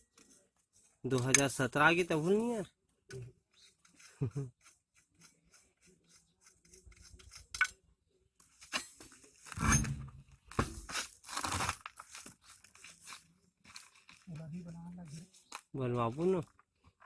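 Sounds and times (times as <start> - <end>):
scraping and rasping at car wheel: 9.5 - 10.2.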